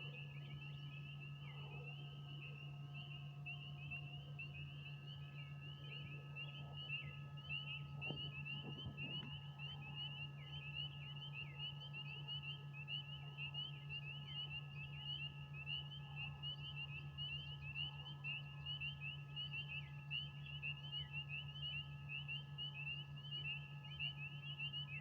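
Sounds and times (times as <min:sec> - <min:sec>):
frogs chirping: 0:00.0 - 0:25.0
steady low hum: 0:00.0 - 0:25.0.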